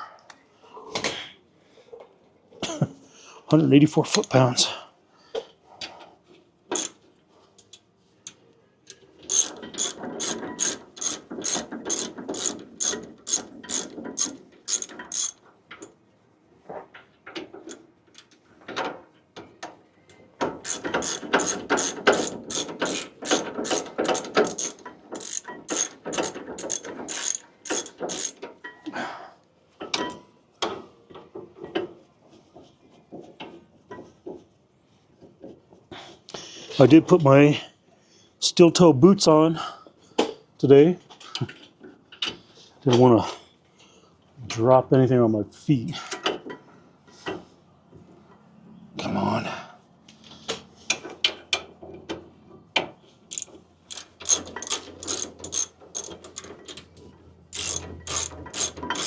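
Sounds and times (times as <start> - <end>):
hand ratchet clicking: 6.8 - 7.0, 9.3 - 15.4, 20.6 - 28.4, 53.3 - 59.0.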